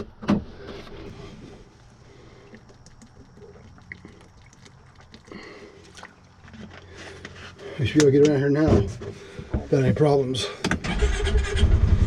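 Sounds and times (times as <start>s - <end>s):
person drinking from a bottle: 1.0s - 7.6s
swallowing: 1.8s - 7.4s
liquid pouring: 2.1s - 7.0s.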